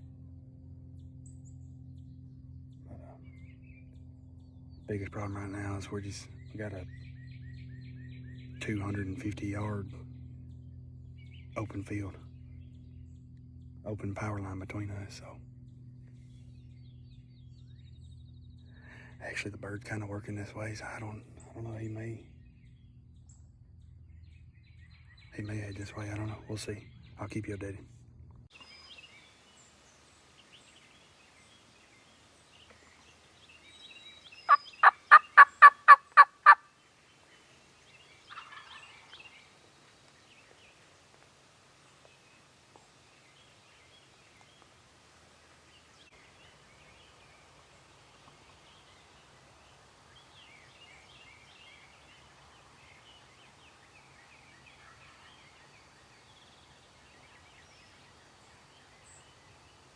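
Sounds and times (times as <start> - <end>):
faint distant turkey call: 33.8 - 36.7, 37.9 - 39.7
turkey yelps: 34.5 - 36.6, 38.2 - 39.2.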